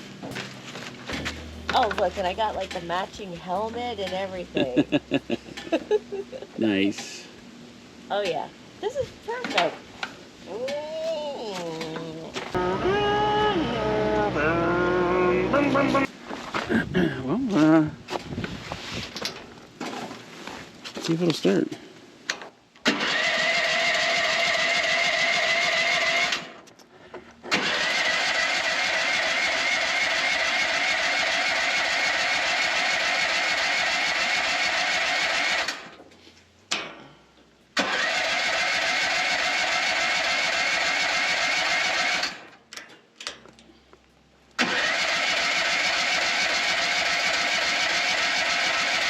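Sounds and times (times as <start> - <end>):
engine cranking by starter: 0.0 - 5.8, 22.8 - 26.6, 27.4 - 36.0, 37.8 - 42.6, 44.6 - 49.0.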